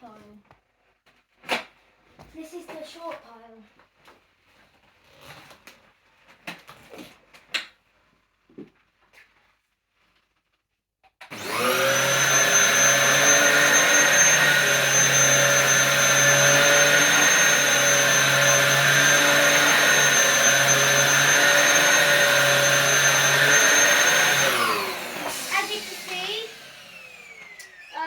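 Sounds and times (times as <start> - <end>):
vacuum cleaner motor whining: 11.2 - 28.0.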